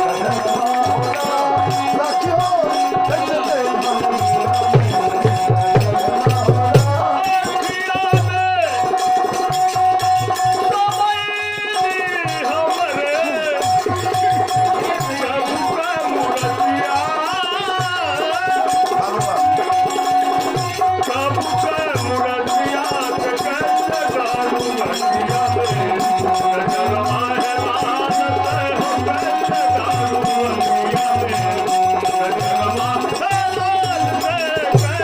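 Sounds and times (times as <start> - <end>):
hand drum beat: 0.0 - 35.0
wavering vocal line: 0.0 - 35.0.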